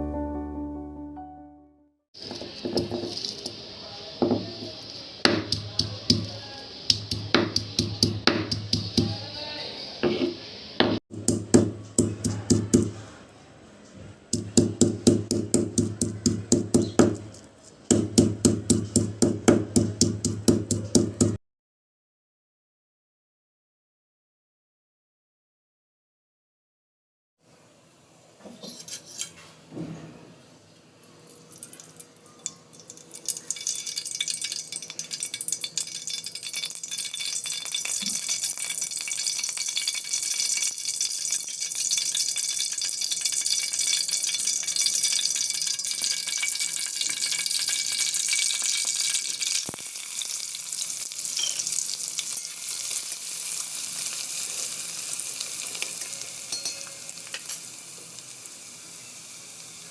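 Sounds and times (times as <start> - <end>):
food sizzling in hot oil: 2.2 - 9.6, 31.3 - 59.9
utensil clinking on a pan: 31.6 - 51.6, 55.7 - 57.7.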